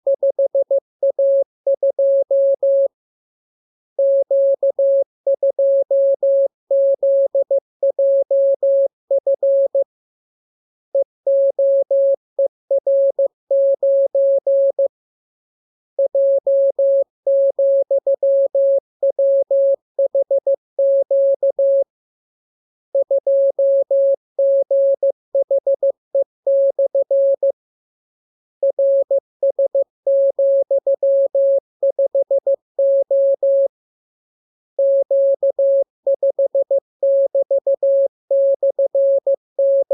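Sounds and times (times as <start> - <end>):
morse code tone: 39.6 - 39.9.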